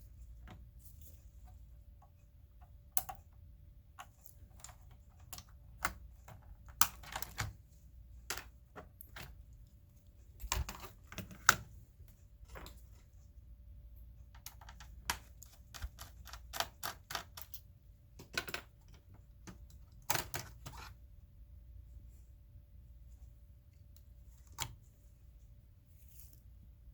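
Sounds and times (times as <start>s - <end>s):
clicks and taps of laptop parts: 18.2s - 20.9s.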